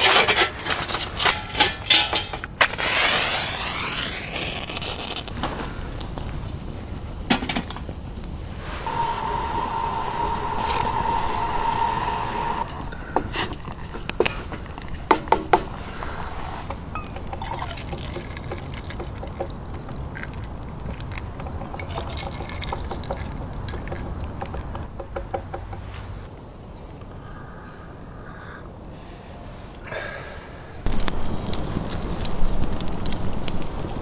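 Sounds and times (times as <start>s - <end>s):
liquid pouring: 17.4s - 24.1s
metal cups clinking: 21.6s - 23.2s.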